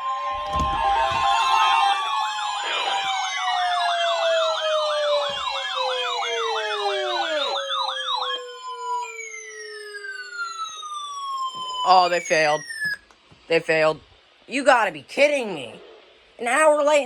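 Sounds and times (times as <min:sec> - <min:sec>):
siren wails gliding downward: 0:00.0 - 0:13.0
electronic siren yelp: 0:00.0 - 0:13.1
steady high siren tone: 0:00.0 - 0:13.1.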